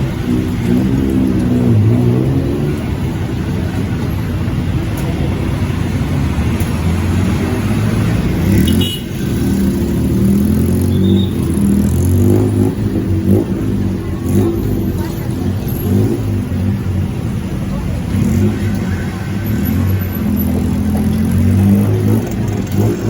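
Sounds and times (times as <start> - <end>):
low traffic rumble: 0.0 - 23.0
vehicle engines running: 0.0 - 23.0.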